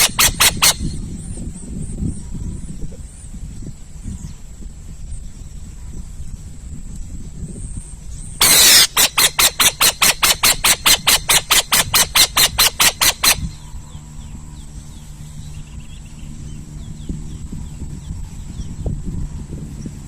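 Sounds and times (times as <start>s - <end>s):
owl screeching: 0.0s - 1.0s, 8.4s - 13.6s.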